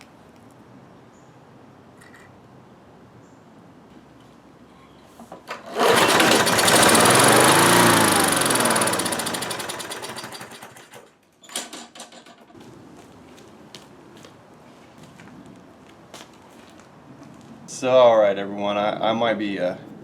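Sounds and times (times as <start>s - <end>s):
lawn mower engine running: 5.4s - 11.2s.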